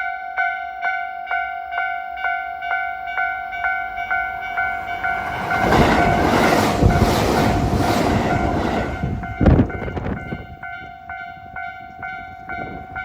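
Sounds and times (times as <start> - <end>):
level crossing alarm ringing: 1.4 - 6.4
train rumbling past: 3.4 - 13.0.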